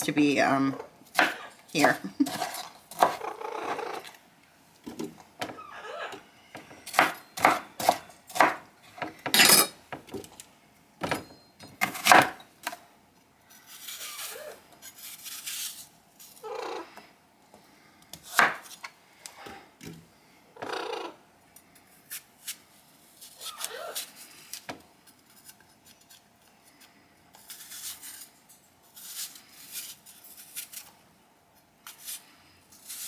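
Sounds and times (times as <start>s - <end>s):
knife chopping on cutting board: 6.6s - 8.6s.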